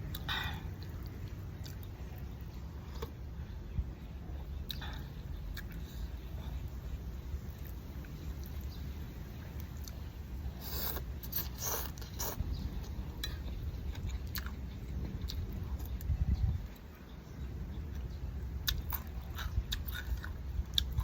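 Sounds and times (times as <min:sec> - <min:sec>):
chewing: 0:00.0 - 0:03.2, 0:04.5 - 0:06.9, 0:09.6 - 0:17.1, 0:17.9 - 0:21.0
crispy food crunching: 0:00.0 - 0:03.2, 0:04.6 - 0:17.0, 0:17.9 - 0:21.0.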